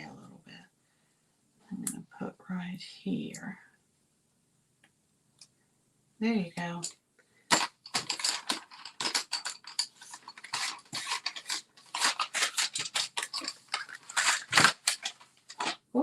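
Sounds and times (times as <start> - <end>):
paper rustling: 7.5 - 15.8.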